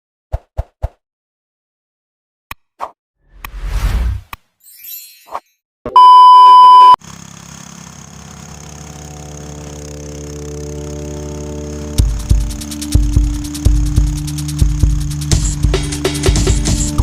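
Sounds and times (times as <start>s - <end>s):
loud steady beep: 6.0s - 7.0s
humming drone: 8.3s - 17.0s.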